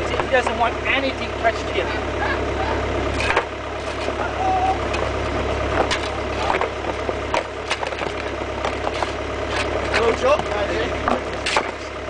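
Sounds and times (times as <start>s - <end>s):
diesel engine running: 0.0s - 12.0s
bucket knocking and scraping rock: 5.7s - 11.8s.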